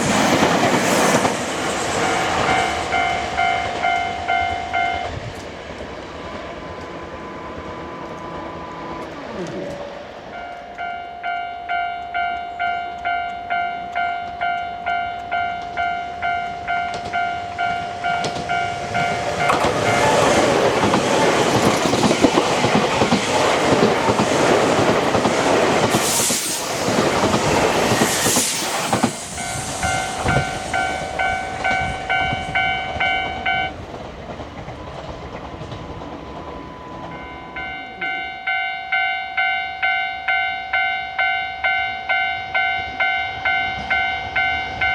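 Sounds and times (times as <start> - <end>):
train passing with rail noise: 0.0 - 44.9
level crossing warning bell: 1.9 - 5.2, 10.3 - 24.2, 29.4 - 33.8, 34.7 - 44.9.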